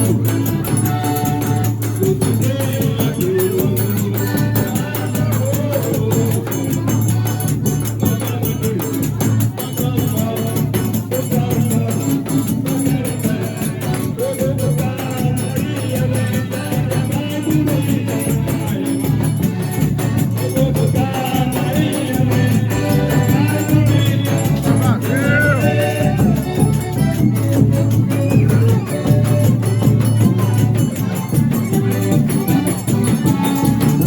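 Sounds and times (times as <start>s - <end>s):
quick percussion beat: 0.0s - 34.0s
person singing: 0.6s - 30.6s.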